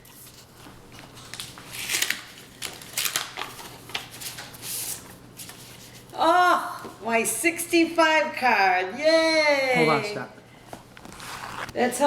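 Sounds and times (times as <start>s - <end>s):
paper rustling and crinkling: 0.0s - 6.1s, 11.0s - 11.8s.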